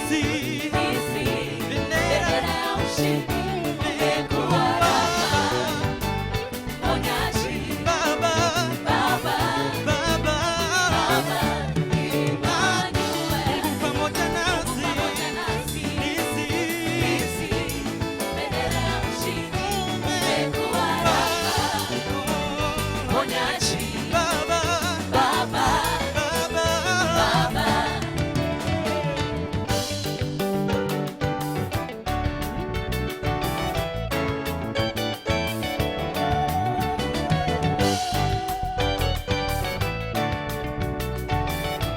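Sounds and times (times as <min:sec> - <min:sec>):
steady beat: 0:00.0 - 0:32.0
gospel band with singing: 0:00.0 - 0:41.9.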